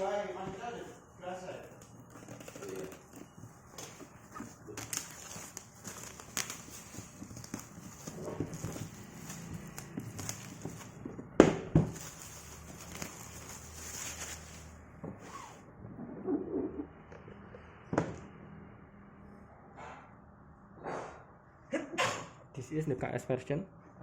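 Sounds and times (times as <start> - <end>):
cardboard box handling: 2.4 - 11.0.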